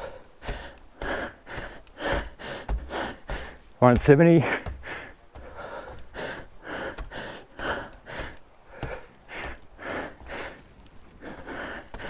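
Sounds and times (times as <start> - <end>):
man breathing hard: 0.0 - 3.8, 4.4 - 12.0.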